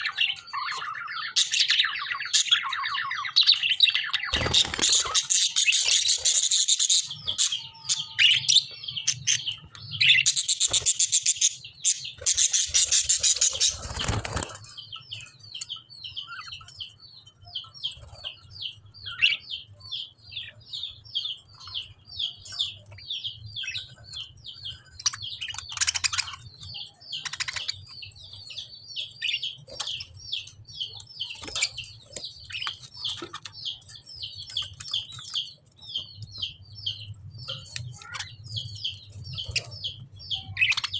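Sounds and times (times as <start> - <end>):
harsh bird squawks: 4.2 - 8.6.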